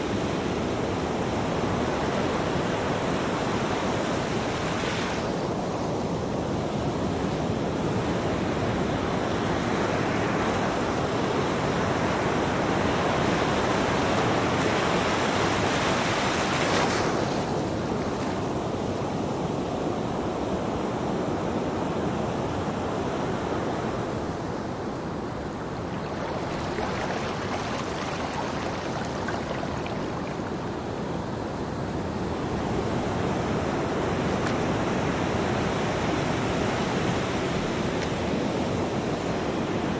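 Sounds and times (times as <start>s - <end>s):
ocean waves breaking: 23.2s - 38.6s.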